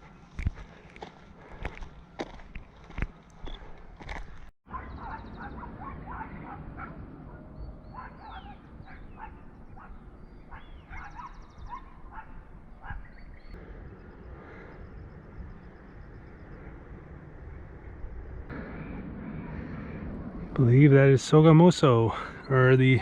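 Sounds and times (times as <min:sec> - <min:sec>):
wind rumble on microphone: 0:00.0 - 0:23.0.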